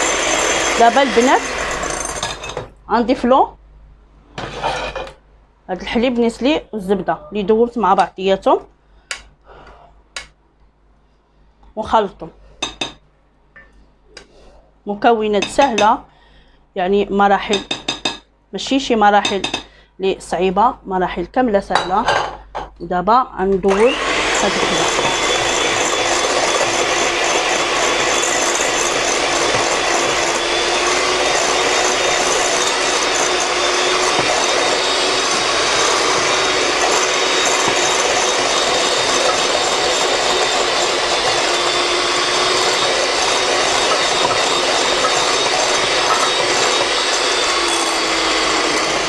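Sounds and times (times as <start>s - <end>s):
electric mixer running: 0.0s - 2.7s, 23.7s - 49.0s.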